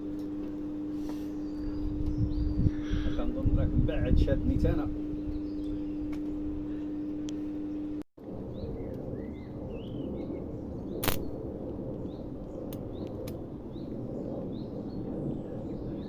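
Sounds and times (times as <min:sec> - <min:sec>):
steady hum: 0:00.0 - 0:16.0
small birds chirping: 0:01.0 - 0:03.6, 0:05.1 - 0:07.9
sharp click: 0:11.0 - 0:11.3.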